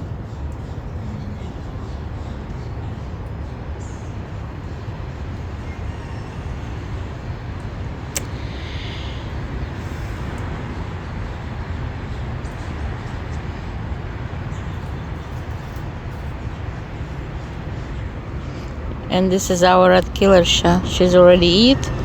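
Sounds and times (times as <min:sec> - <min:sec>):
low outdoor rumble: 0:00.0 - 0:22.0
sharp click: 0:08.2 - 0:08.4.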